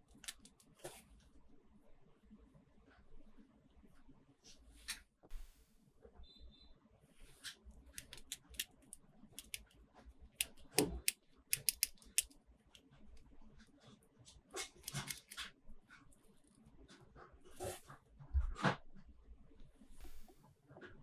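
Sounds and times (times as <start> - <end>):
plastic parts clicking and crinkling: 8.0 - 9.7, 10.4 - 12.9, 14.6 - 15.5.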